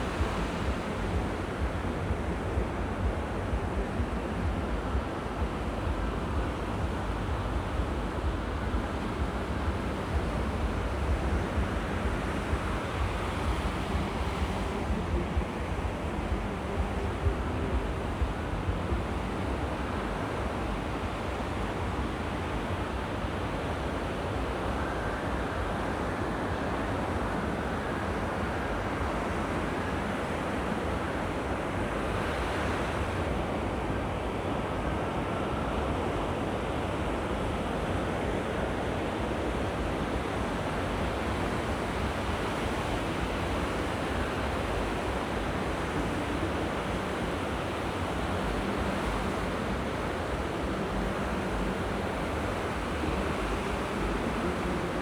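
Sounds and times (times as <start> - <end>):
wind on microphone: 0.0 - 55.0
sea surf washing onto beach: 36.7 - 55.0.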